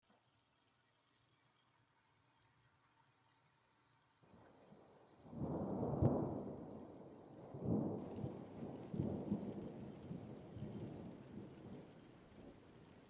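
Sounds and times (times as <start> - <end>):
rain: 0.0 - 13.0
thunder rumbling: 4.4 - 13.0.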